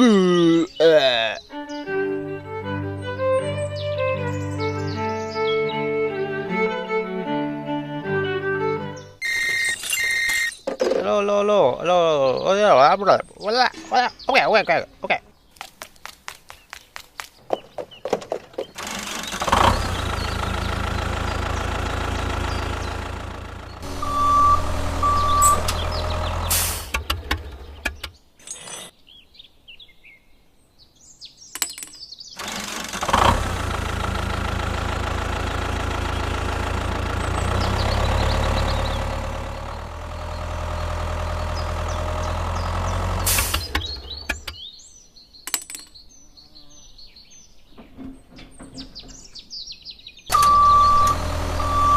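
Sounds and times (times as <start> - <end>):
short beeps: 9.2 - 10.6, 23.9 - 25.8, 50.3 - 51.9
vehicle engine running: 18.7 - 28.1, 32.4 - 44.6, 50.3 - 51.9.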